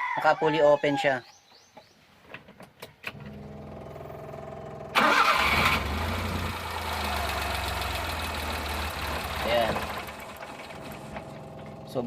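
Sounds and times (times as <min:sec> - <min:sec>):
engine cranking and starting: 0:03.0 - 0:11.9
engine idling: 0:03.2 - 0:12.0.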